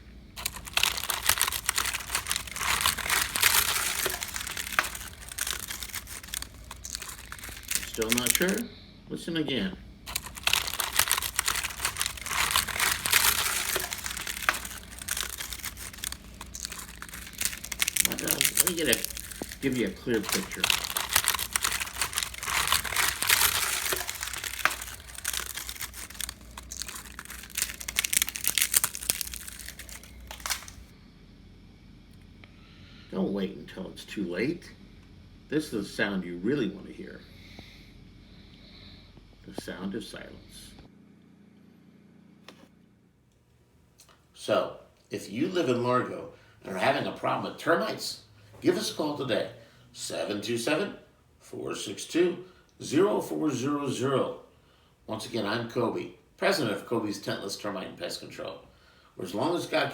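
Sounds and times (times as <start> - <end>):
termites crackling in wood: 0.4 - 8.6, 10.1 - 30.9.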